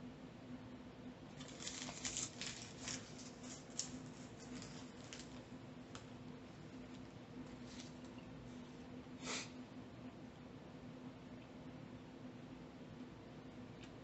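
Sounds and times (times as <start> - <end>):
chewing crispy food: 1.4 - 5.5.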